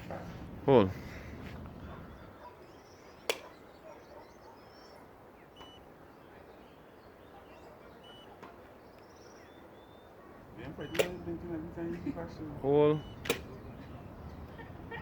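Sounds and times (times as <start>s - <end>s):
faint bird chirps: 1.9s - 11.3s
short high beeps: 5.6s - 5.8s
sharp click: 10.9s - 11.2s, 13.2s - 13.5s.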